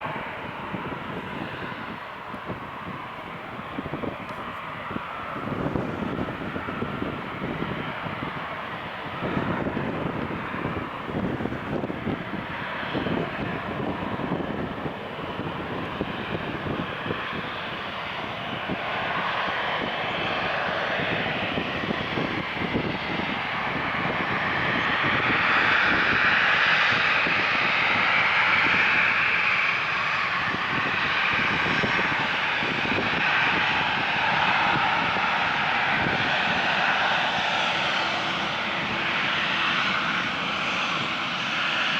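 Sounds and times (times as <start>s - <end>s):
jet engines roaring: 0.0s - 41.9s
wind rumbling on microphone: 0.0s - 41.9s.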